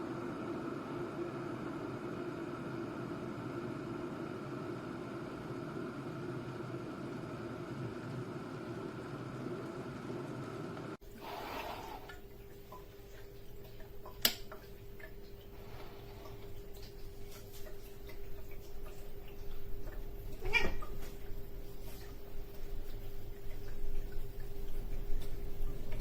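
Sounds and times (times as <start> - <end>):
electric kettle humming: 0.0 - 26.0
faint ticks and crackles: 12.0 - 26.0
kettle switch click: 14.2 - 14.5.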